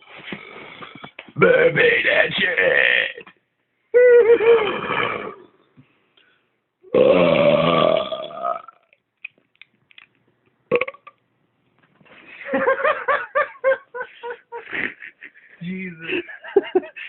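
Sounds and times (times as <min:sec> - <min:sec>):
man laughing: 0:04.0 - 0:04.8, 0:12.3 - 0:17.0
man belching: 0:04.5 - 0:05.5, 0:06.9 - 0:08.9, 0:10.7 - 0:11.2.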